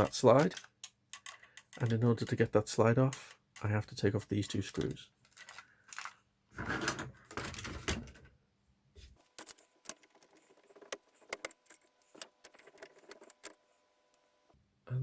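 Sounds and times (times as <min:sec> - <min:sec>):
plastic handling noise: 0:04.5 - 0:08.4.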